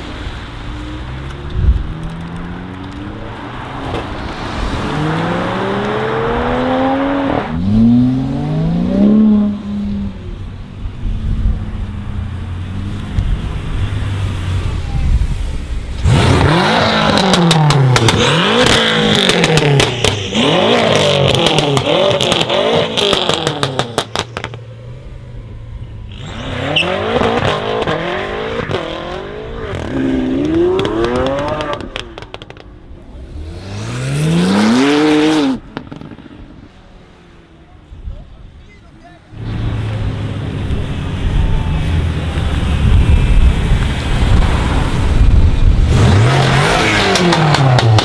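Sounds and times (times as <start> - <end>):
car engine revving: 0.0 - 36.9, 39.3 - 48.0
exhaust crackling pops: 1.1 - 4.9, 15.9 - 25.0, 29.6 - 33.2, 35.5 - 36.6, 39.4 - 48.0.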